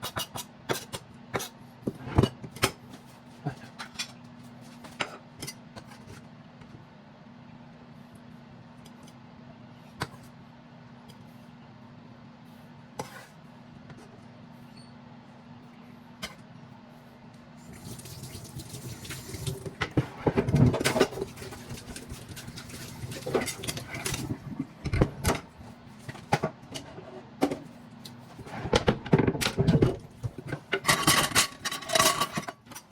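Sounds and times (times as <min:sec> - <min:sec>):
steady low hum: 0:03.0 - 0:32.5
kitchen utensils clicking: 0:30.8 - 0:32.9.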